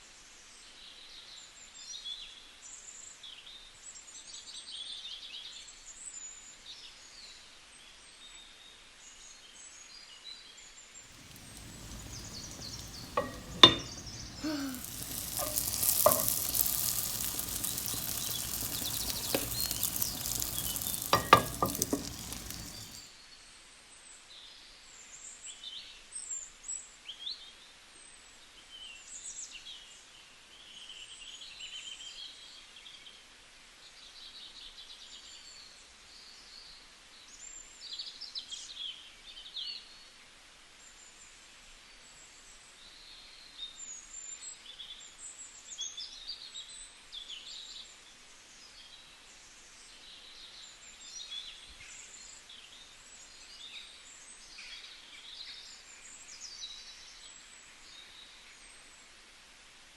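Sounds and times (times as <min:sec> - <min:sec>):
pan sizzling: 0:11.1 - 0:23.0.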